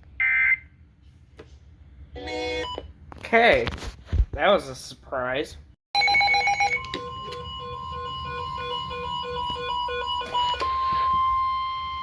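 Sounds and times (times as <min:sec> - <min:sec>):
rapid alternating beeping: 0:06.0 - 0:12.0
steady warning alarm tone: 0:06.0 - 0:12.0.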